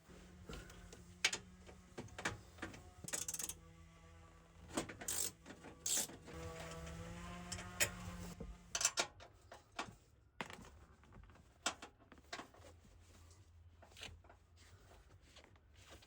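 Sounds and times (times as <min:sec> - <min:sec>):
tools and metal parts clicking: 0:03.0 - 0:03.6, 0:04.9 - 0:06.4
small electric motor whirring: 0:05.0 - 0:08.7.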